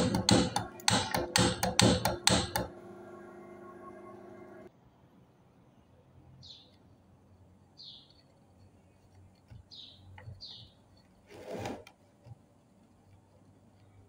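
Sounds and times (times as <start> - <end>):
small bird chirping: 6.4 - 6.9, 7.7 - 11.1.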